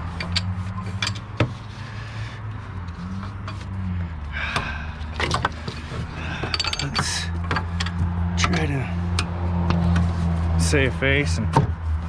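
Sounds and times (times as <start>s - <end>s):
metal tools clinking: 0.0s - 1.4s, 5.2s - 8.8s
vehicle engine idling: 0.0s - 12.0s.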